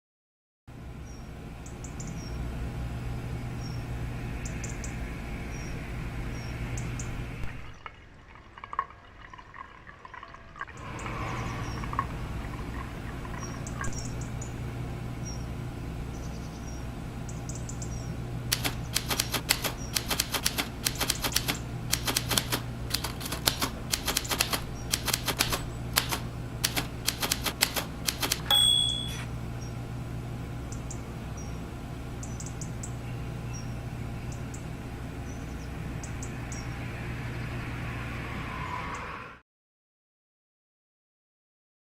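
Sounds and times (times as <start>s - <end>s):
low hum: 10.7s - 38.4s
typewriter keys clacking: 18.5s - 29.2s
typewriter bell ringing: 26.7s - 29.3s.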